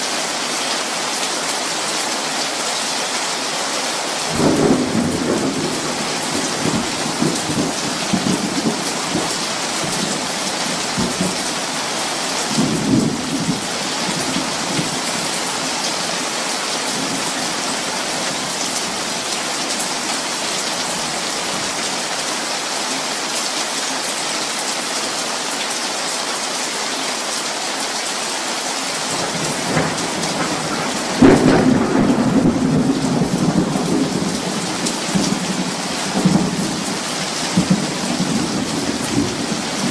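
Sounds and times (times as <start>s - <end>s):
steady rain falling: 0.0s - 39.9s
loud thunderclap: 4.3s - 10.3s, 29.1s - 36.8s
thunder rumbling: 4.3s - 15.4s, 29.1s - 39.9s.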